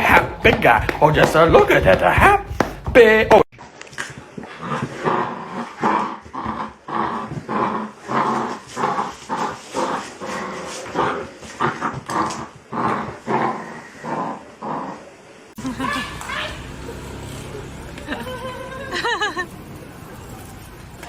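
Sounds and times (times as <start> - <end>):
dog growling: 4.4 - 15.2.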